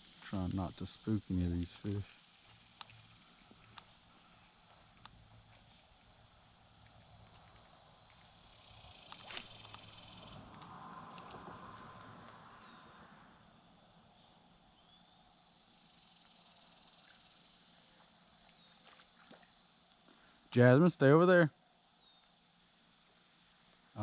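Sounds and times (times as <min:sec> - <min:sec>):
soft hiss: 0:00.0 - 0:24.0
high-pitched whine: 0:08.9 - 0:13.8.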